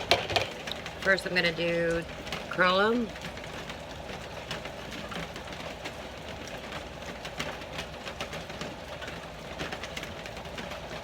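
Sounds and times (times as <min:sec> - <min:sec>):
steady rain hiss: 0:00.0 - 0:11.0.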